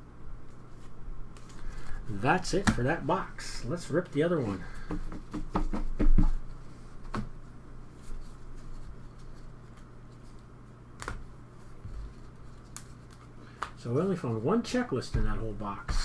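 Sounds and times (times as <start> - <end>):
cards and cardboard handled: 0.5 - 3.0, 7.9 - 13.8.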